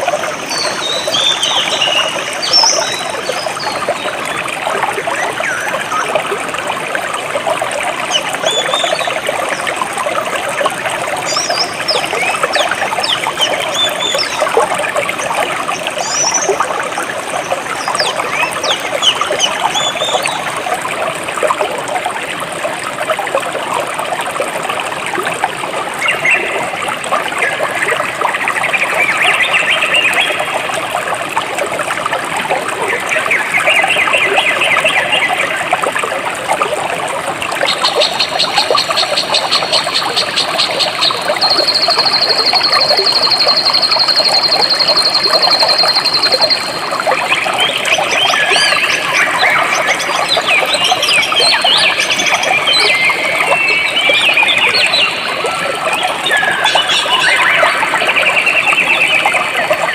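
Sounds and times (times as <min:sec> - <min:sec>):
stream flowing over rocks: 0:00.0 - 0:59.9.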